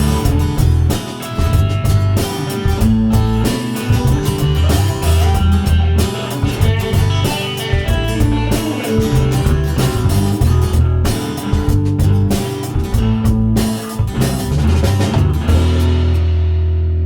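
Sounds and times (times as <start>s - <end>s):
instrumental rock music: 0.0s - 17.0s.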